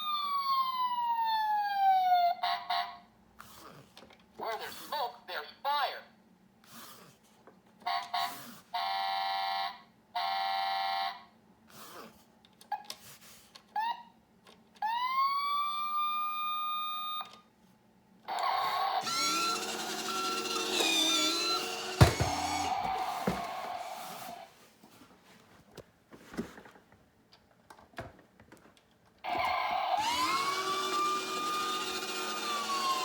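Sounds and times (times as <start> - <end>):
toy siren wail: 0.0 - 3.0, 7.8 - 11.3, 13.8 - 14.2, 14.8 - 17.3, 18.3 - 24.0, 29.3 - 33.0.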